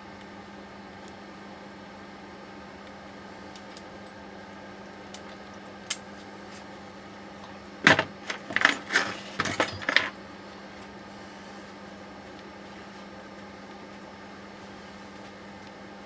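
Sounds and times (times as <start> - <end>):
steady hum: 0.0 - 16.0
metal parts knocking and clanking: 7.8 - 10.2.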